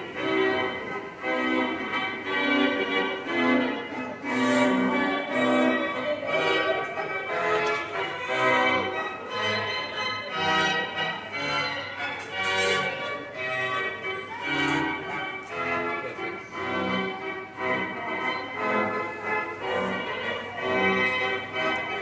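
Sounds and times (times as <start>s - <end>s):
bells ringing: 7.6s - 14.4s.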